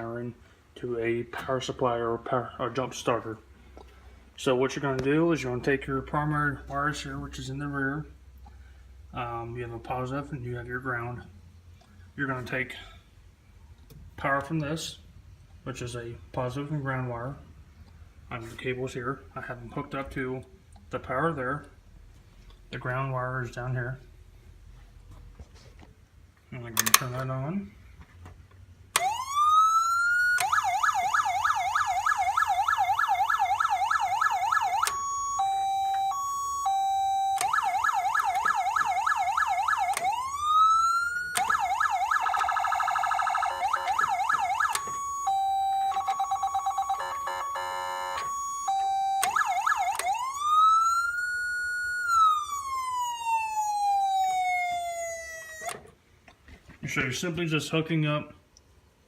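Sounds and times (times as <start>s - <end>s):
electronic siren cycling tones: 29.0s - 55.7s.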